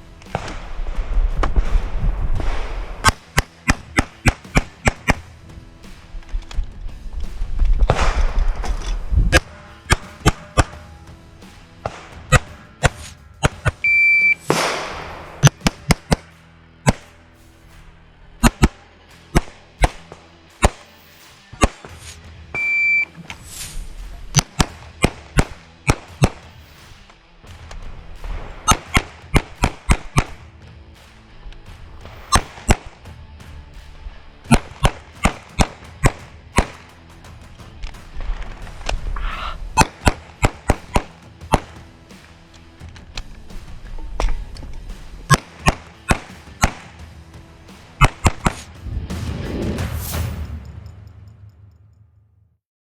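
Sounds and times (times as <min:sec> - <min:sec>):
pistol shots in rapid strings: 0:00.0 - 0:22.2, 0:23.3 - 0:50.5
background music: 0:00.0 - 0:52.4
shot timer high beep: 0:13.8 - 0:14.4, 0:22.6 - 0:23.1.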